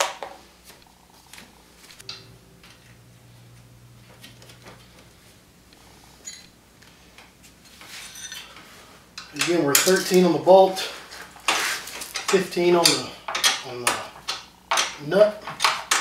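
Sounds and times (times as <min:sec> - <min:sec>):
metal clicks and taps of wrenches: 0:12.2 - 0:16.0.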